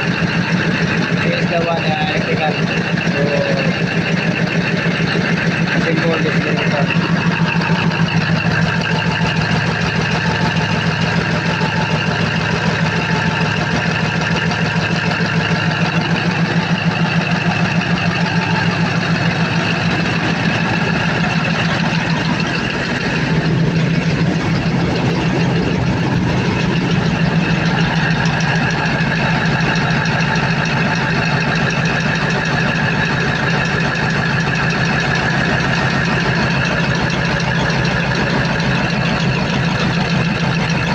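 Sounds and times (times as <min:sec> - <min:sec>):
diesel engine idling: 0:00.0 - 0:40.9.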